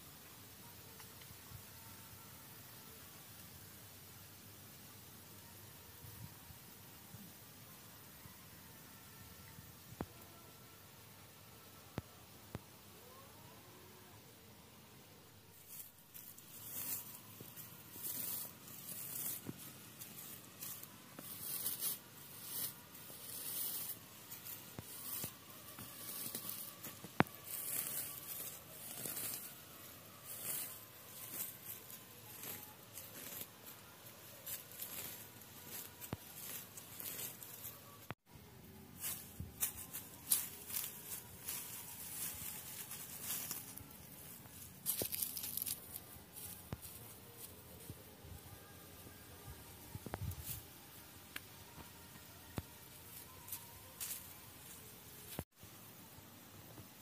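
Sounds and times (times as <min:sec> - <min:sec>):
material rustling and scraping: 0:15.6 - 0:38.2.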